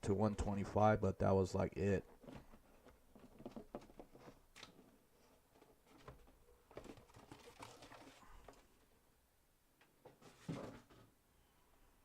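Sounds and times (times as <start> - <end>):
hands handling cardboard boxes: 2.0 - 8.7.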